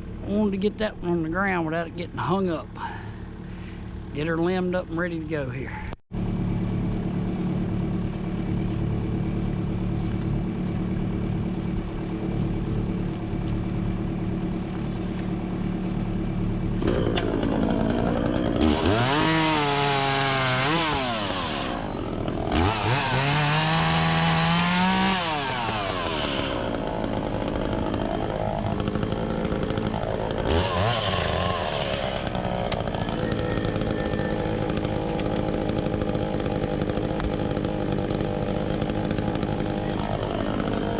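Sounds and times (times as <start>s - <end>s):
chainsaw idling and revving: 0.0s - 5.4s, 6.3s - 40.9s.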